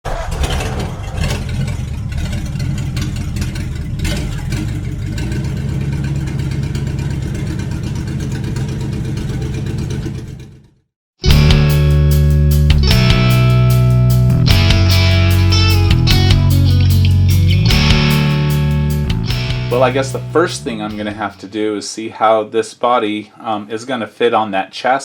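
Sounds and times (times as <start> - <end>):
engine running steadily: 0.5 - 10.6
guitar music: 11.2 - 21.9.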